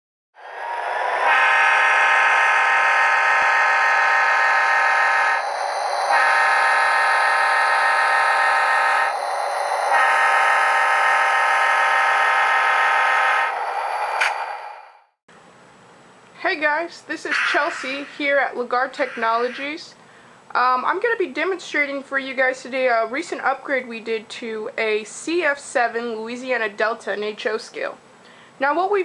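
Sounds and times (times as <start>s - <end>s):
rushing noise: 0.4s - 14.9s, 17.2s - 19.8s
diesel locomotive horn blasts: 1.2s - 5.5s, 6.1s - 9.1s, 9.9s - 13.5s.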